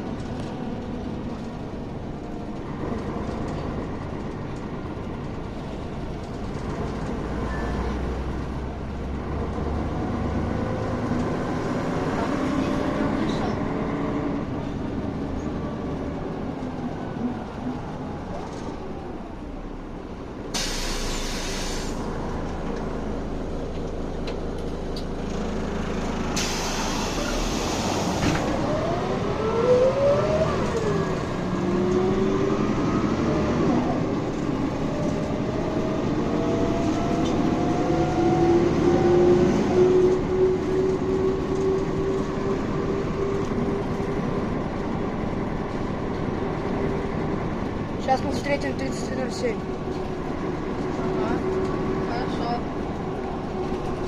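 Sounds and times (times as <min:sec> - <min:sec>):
bus drivetrain whine: 0:00.0 - 0:54.0
bus air brake hisses: 0:20.5 - 0:22.0, 0:26.4 - 0:28.2.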